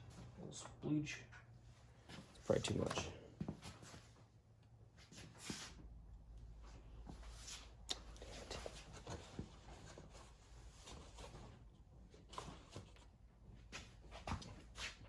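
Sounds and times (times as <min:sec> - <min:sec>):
faint scraping and handling noises: 0:04.9 - 0:05.9, 0:06.5 - 0:15.0.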